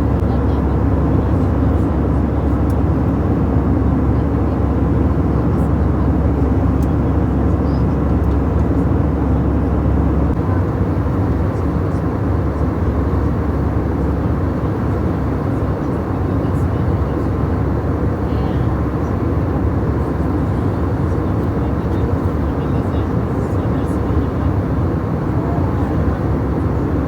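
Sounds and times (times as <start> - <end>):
airliner engines roaring in cabin: 0.0 - 27.0.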